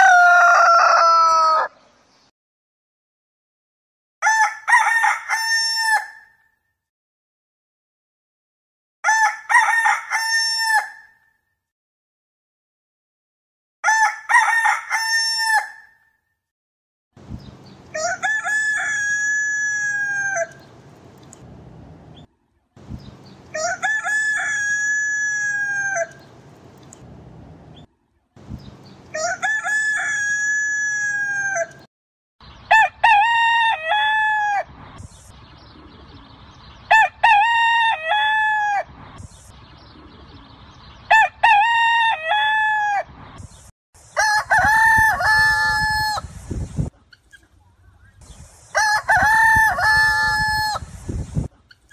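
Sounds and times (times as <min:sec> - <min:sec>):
roosters crowing: 0:00.0 - 0:01.9, 0:17.9 - 0:20.8, 0:23.2 - 0:26.4, 0:28.8 - 0:31.9, 0:32.7 - 0:34.8, 0:36.9 - 0:39.0, 0:41.1 - 0:43.2, 0:44.1 - 0:46.3, 0:48.7 - 0:50.9.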